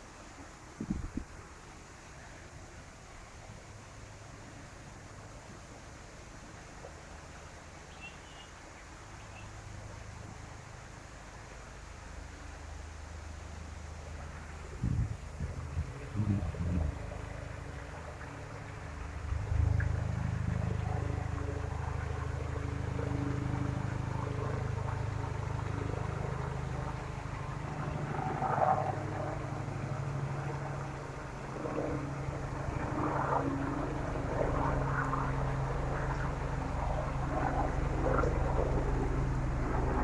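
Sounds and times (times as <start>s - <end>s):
low engine drone: 12.4s - 40.0s.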